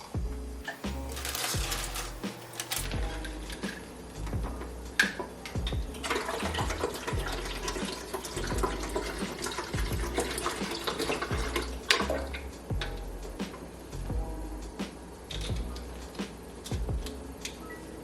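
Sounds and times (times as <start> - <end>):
music with deep bass beat: 0.0 - 17.6
water running from a tap: 5.9 - 12.4.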